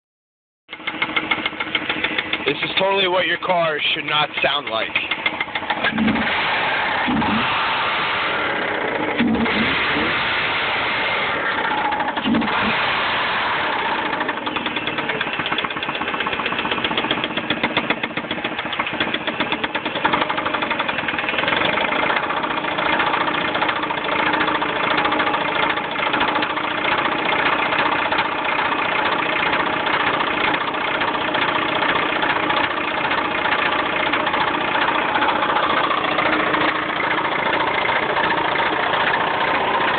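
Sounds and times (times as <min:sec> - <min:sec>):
engine rod knocking: 0:00.7 - 0:02.8, 0:04.9 - 0:06.2, 0:13.9 - 0:39.9
car engine running: 0:00.7 - 0:39.9.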